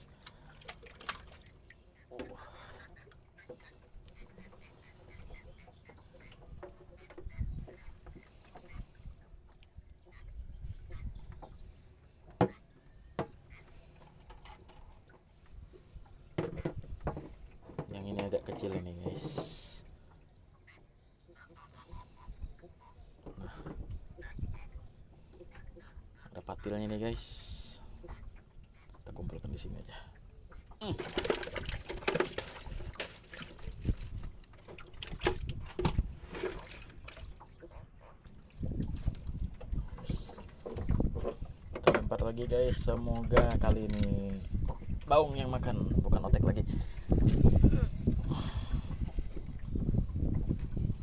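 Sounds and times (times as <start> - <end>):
water splashing: 0.0 - 2.1, 30.5 - 50.9.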